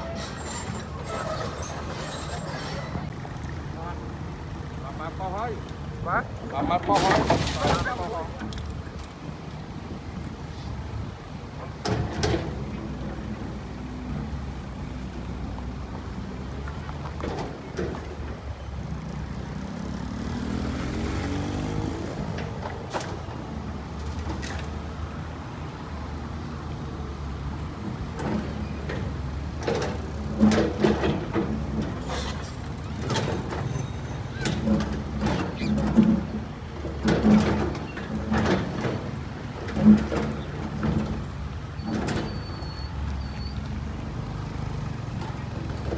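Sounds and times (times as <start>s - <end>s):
sharp metal clanks and knocks: 28.2s - 41.2s.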